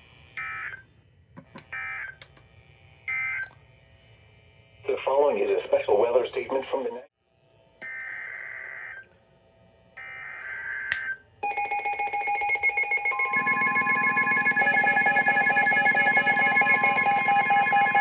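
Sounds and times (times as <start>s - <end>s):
harsh digital data bursts: 11.4s - 18.0s
pulsing electronic alert tone: 11.4s - 18.0s
steady electronic tone: 11.4s - 18.0s.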